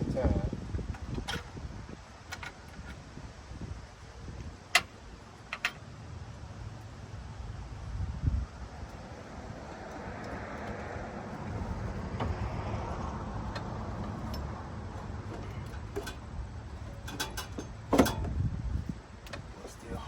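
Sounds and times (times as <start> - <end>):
vehicle passing: 7.8 - 16.7
sharp metal knocks and clanks: 13.6 - 18.3.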